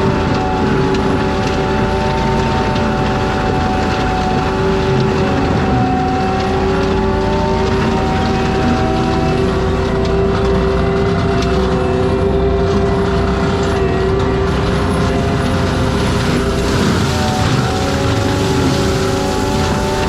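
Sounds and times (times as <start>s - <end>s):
mulcher engine and drum hum: 0.0s - 20.0s
high whine of cutting drum: 13.9s - 20.0s.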